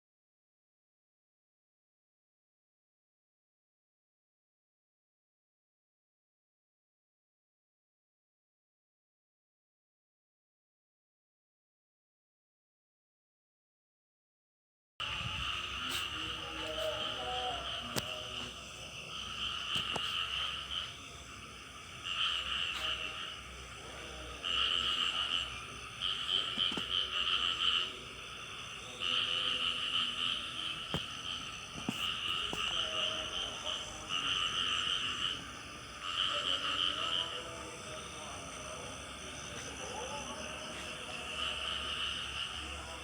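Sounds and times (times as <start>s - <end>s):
frogs calling buzzily: 15.0s - 43.0s
high insect drone: 15.0s - 43.0s.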